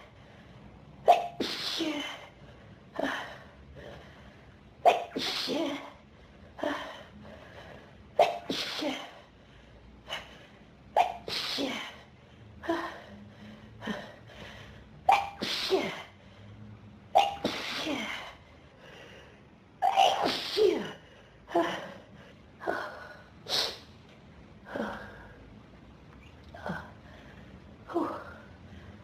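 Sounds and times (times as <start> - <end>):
person sneezing: 1.0 - 2.1, 4.9 - 5.8, 8.2 - 9.2, 11.0 - 12.0, 15.1 - 16.1, 17.2 - 18.2, 19.8 - 21.0.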